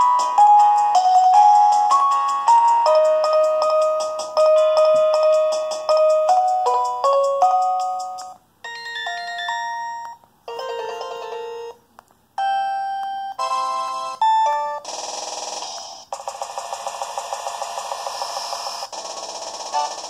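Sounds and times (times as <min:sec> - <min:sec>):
synthesized chime melodies: 0:08.7 - 0:10.0.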